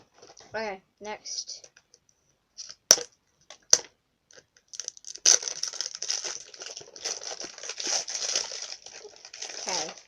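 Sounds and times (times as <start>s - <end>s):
plastic packaging crinkling: 3.7s - 10.0s.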